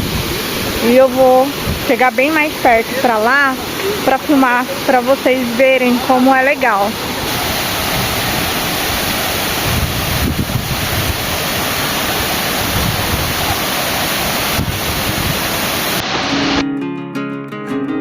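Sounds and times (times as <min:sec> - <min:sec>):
wind buffeting microphone: 0:00.0 - 0:02.6, 0:06.6 - 0:16.0
waterfall rushing: 0:00.0 - 0:16.8
strummed acoustic guitar music: 0:16.0 - 0:18.0.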